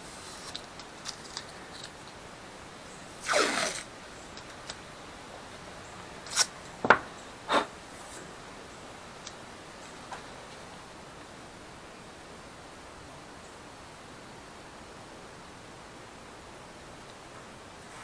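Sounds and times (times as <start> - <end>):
tape ripping: 0.2 - 2.1, 3.2 - 4.8, 6.3 - 6.5.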